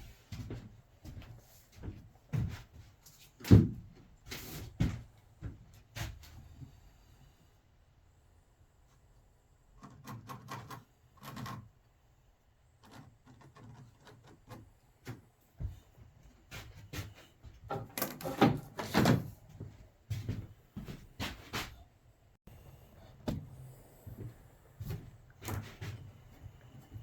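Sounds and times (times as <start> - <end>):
wooden knocks and clunks: 16.5 - 21.4.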